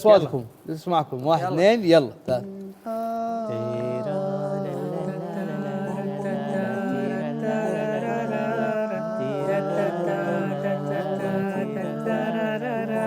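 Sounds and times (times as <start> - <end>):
men singing a cappella: 2.4 - 13.0.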